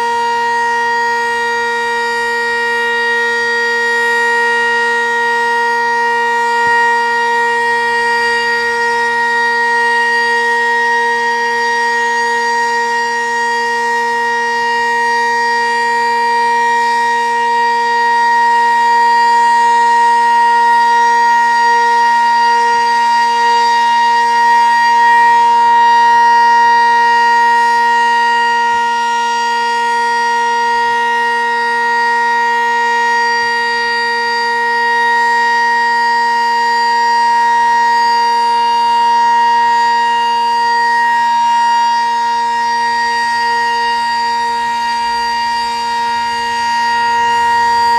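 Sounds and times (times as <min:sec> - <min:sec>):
tornado siren steady chord: 0:00.0 - 0:47.9.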